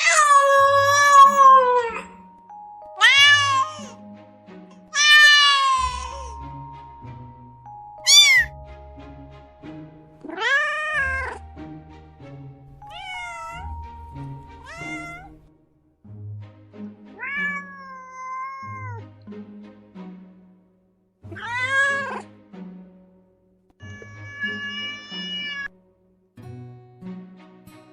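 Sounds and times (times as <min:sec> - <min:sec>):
cat meowing: 0:00.0 - 0:02.1, 0:03.0 - 0:04.0, 0:04.9 - 0:06.5, 0:08.0 - 0:08.6, 0:10.2 - 0:11.6, 0:12.8 - 0:15.4, 0:17.2 - 0:19.0, 0:21.3 - 0:22.3, 0:23.8 - 0:25.7
background music: 0:00.0 - 0:27.9.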